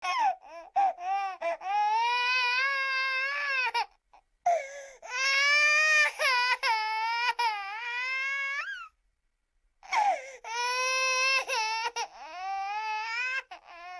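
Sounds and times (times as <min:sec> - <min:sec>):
baby crying: 0:00.0 - 0:09.0, 0:09.8 - 0:13.9.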